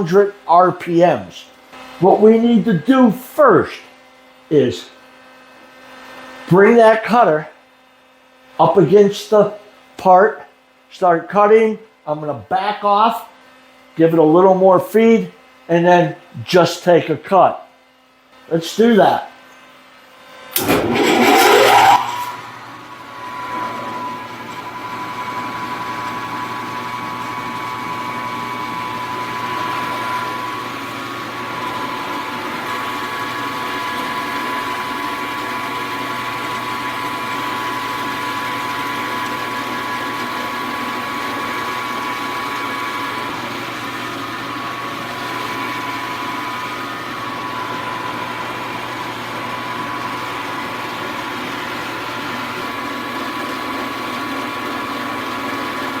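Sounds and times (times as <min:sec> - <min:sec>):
milling machine cutting: 0:20.6 - 0:55.9.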